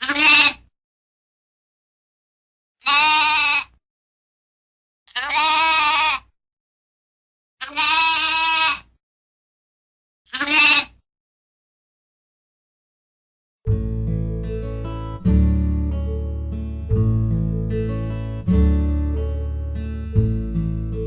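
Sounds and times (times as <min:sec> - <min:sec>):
lamb bleating: 0:00.0 - 0:00.6, 0:02.8 - 0:03.8, 0:05.1 - 0:06.3, 0:07.6 - 0:08.9, 0:10.3 - 0:11.0.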